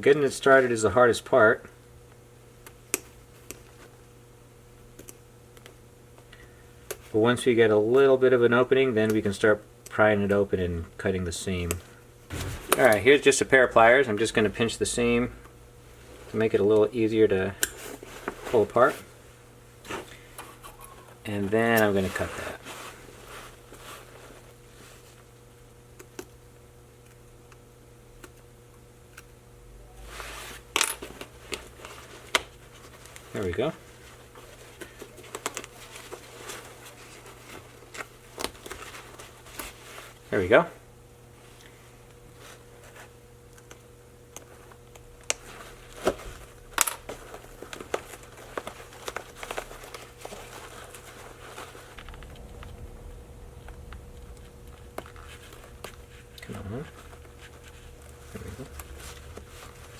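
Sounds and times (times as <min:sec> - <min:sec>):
nylon fabric crinkling and rustling: 0:44.5 - 0:52.0.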